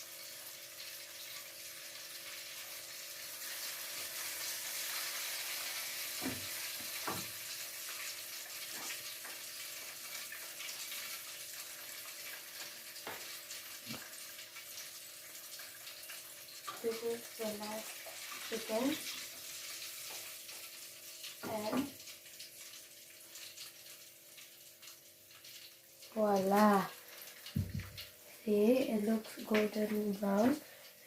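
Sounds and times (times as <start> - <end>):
chicken deep-frying in hot oil: 0.0 - 31.0
utensil knocks: 27.6 - 28.0.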